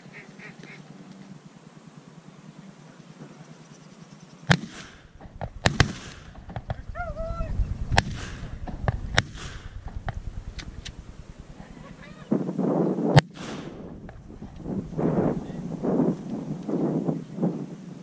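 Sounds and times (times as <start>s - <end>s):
duck-like call: 0.0s - 1.0s
shotgun blasts echoing: 4.5s - 11.6s, 13.2s - 15.6s.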